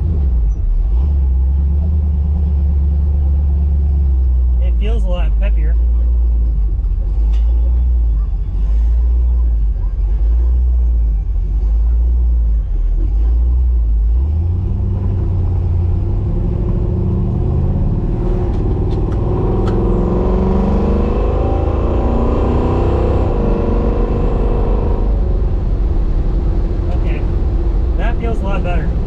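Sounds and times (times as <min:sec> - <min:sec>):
car engine rumbling and revving: 0:00.0 - 0:29.0.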